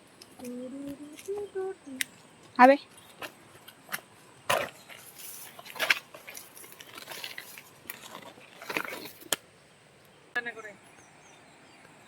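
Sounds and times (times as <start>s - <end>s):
footsteps crunching dry leaves: 4.6s - 9.3s.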